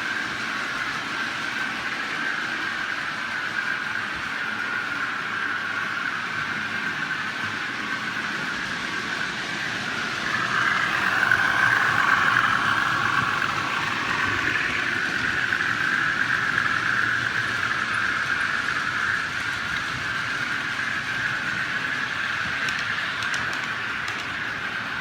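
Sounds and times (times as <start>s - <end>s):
model train whirring on track: 0.0s - 25.0s.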